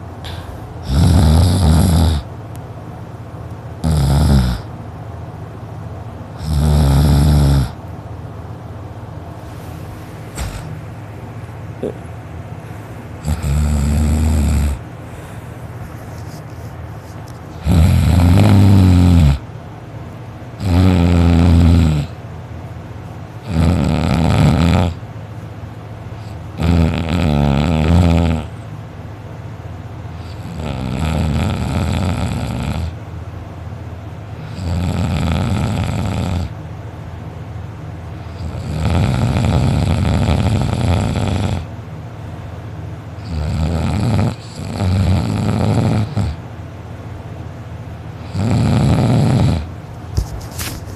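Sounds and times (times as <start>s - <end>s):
person snoring loudly: 0.3s - 2.3s, 3.8s - 4.7s, 6.4s - 7.8s, 13.2s - 14.8s, 17.6s - 19.4s, 20.6s - 22.1s, 23.5s - 25.0s, 26.6s - 28.5s, 30.2s - 32.9s, 34.5s - 36.5s, 38.4s - 41.7s, 43.2s - 46.4s, 48.2s - 49.7s.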